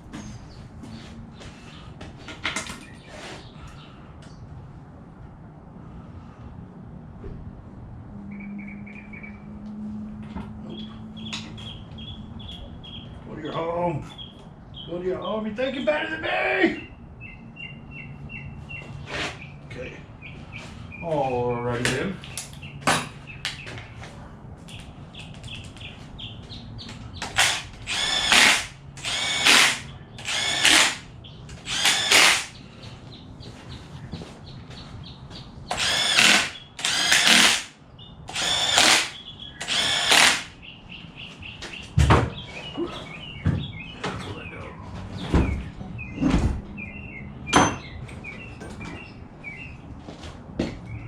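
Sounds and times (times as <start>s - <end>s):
power drill bursts: 27.2s - 32.6s, 35.7s - 40.5s.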